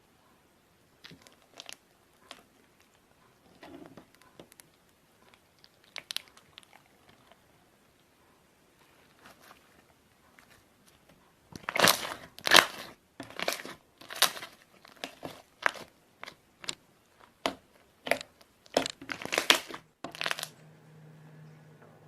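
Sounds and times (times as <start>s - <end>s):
slime squelching and popping: 1.0s - 7.5s, 10.4s - 20.5s.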